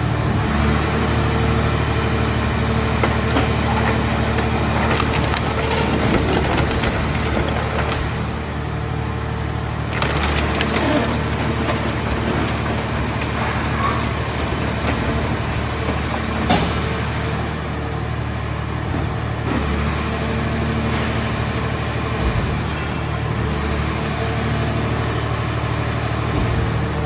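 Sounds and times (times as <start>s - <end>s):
baler engine and hydraulics running: 0.0s - 27.0s
metal creaking and cracking: 2.9s - 8.6s, 9.8s - 17.3s.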